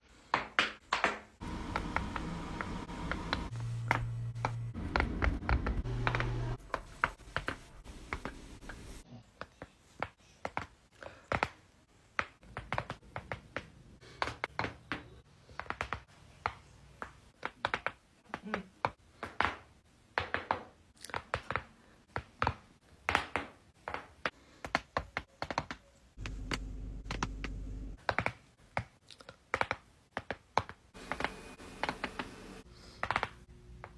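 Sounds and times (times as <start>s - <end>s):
low steady hum: 1.4s - 6.8s, 26.2s - 28.0s.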